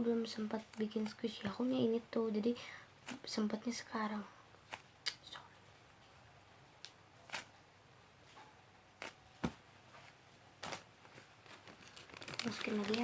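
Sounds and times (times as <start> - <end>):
soft clicks and rustles: 8.2 - 13.0.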